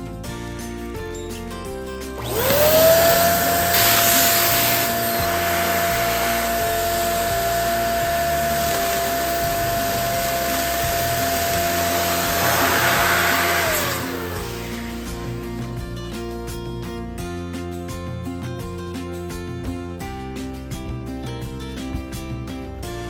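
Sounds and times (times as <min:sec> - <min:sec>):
balloon inflator motor whine: 0:02.2 - 0:15.6
rush of air: 0:03.2 - 0:15.6.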